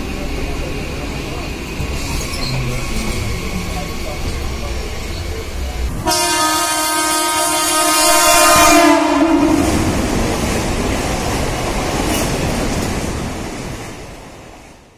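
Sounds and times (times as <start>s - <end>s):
train rushing and rumbling: 0.0s - 14.9s
train horn: 6.0s - 10.1s.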